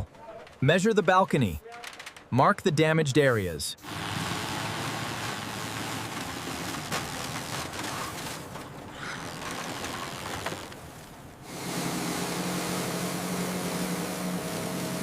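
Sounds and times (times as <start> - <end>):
noisy work-site ambience: 0.0 - 15.0
low mechanical hum: 3.8 - 15.0.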